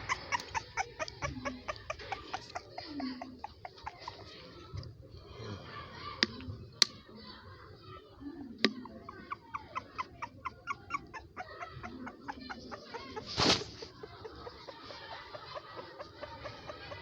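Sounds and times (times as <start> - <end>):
chicken clucking: 0.0 - 4.9, 8.4 - 17.0.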